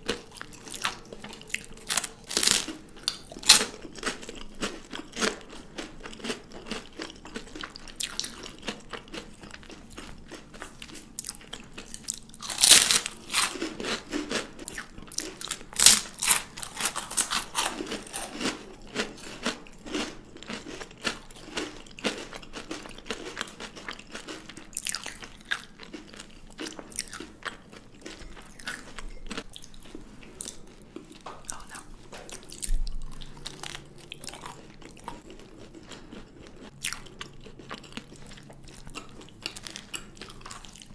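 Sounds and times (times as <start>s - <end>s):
chocolate crunching bites: 0.0s - 29.7s.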